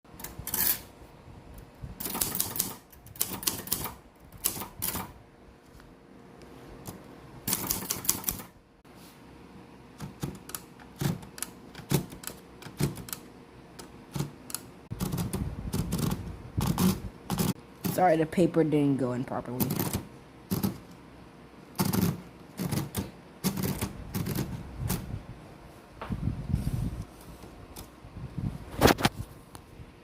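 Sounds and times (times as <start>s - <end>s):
typewriter keys clacking: 2.0s - 5.1s, 6.9s - 8.5s, 10.0s - 13.2s, 14.1s - 18.0s, 21.8s - 25.0s.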